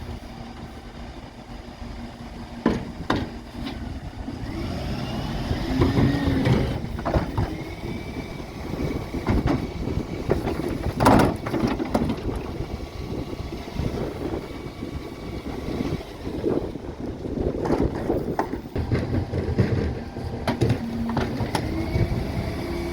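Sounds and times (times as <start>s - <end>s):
diesel engine running: 0.0s - 22.9s
bins clattering and banging: 5.7s - 7.8s, 9.1s - 12.6s, 17.4s - 22.1s.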